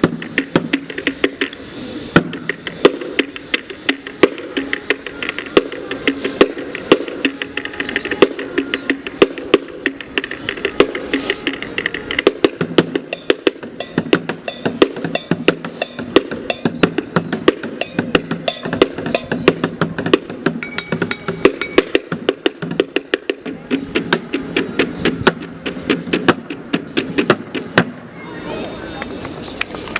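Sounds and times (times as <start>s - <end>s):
drumsticks beating on bottles: 16.1s - 26.4s.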